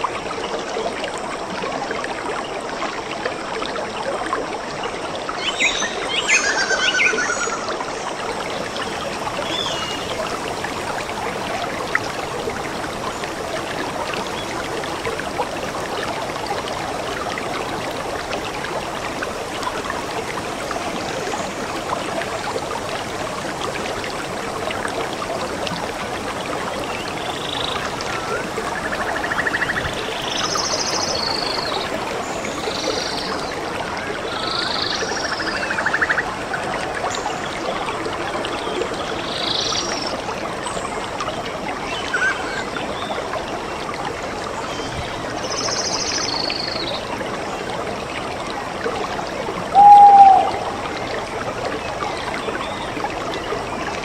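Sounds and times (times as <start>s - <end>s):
stream water trickling: 0.0s - 54.0s
bird calling: 49.7s - 51.0s.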